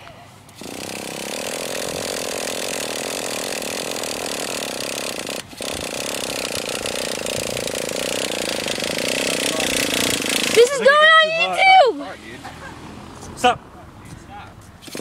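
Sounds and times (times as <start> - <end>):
rc car engine buzzing: 0.8 - 10.9.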